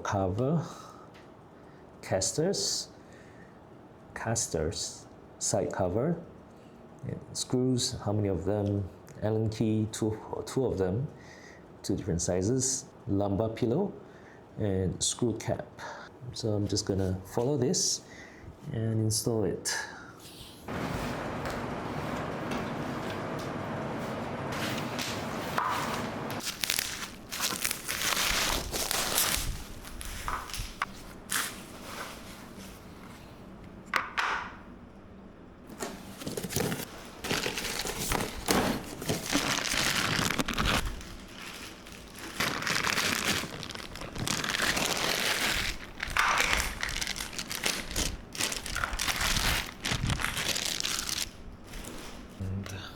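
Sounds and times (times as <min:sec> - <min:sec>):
plastic packaging crinkling: 0:26.4 - 0:31.9, 0:36.1 - 0:51.8.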